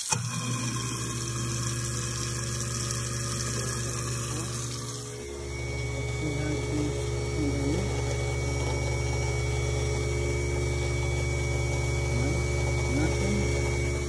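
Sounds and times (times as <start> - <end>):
tap water running into sink: 0.0 - 5.3
garbage disposal humming: 0.0 - 14.0.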